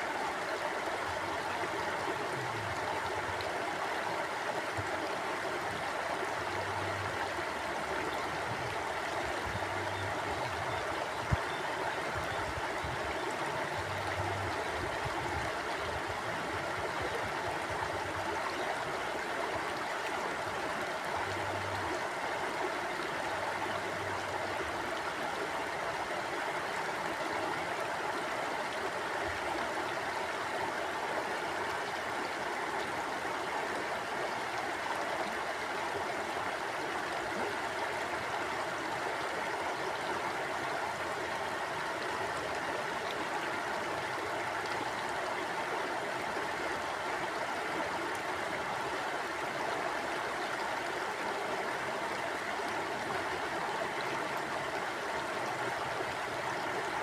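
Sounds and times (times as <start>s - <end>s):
stream flowing over stones: 0.0s - 57.0s.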